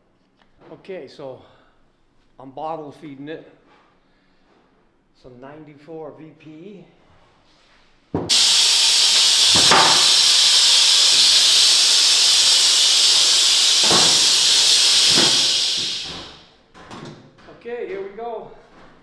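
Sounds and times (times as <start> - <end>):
air jet hissing loudly: 8.3 - 16.4.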